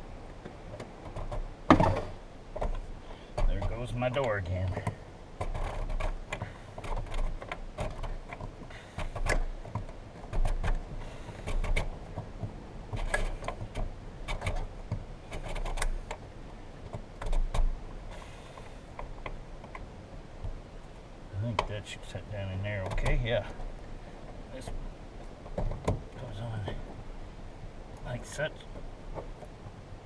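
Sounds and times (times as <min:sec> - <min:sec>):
plastic and metal parts clicking: 0:15.3 - 0:16.2.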